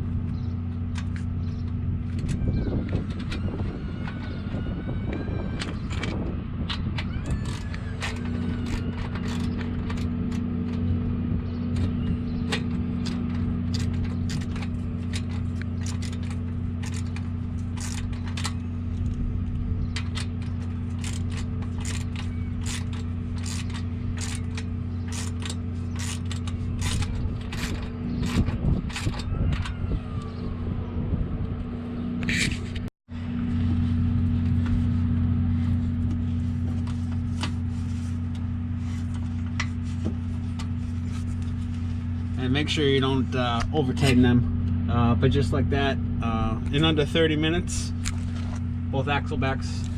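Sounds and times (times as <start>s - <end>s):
steady low hum: 0.0s - 49.9s
hand tools clicking on metal: 5.6s - 11.0s, 11.7s - 19.2s, 19.9s - 29.8s.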